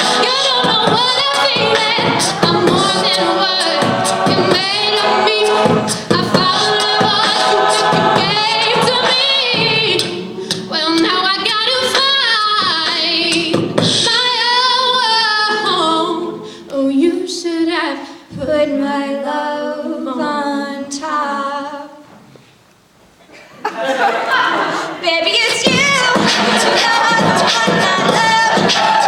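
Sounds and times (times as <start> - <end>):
vocal percussion: 0.0 - 14.4, 24.6 - 29.0
sung backing harmonies: 0.0 - 29.0.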